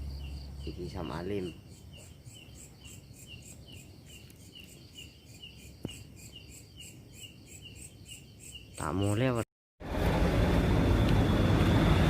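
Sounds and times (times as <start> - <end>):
insects chirping: 0.0 - 9.4.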